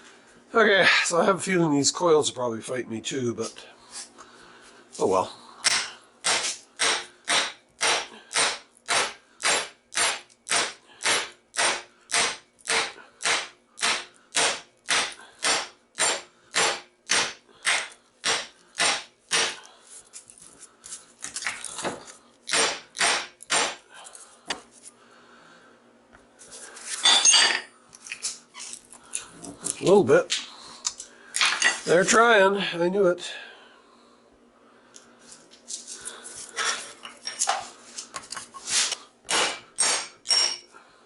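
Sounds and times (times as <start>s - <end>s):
hammer striking metal: 5.6s - 19.6s, 22.5s - 23.8s, 39.3s - 40.6s.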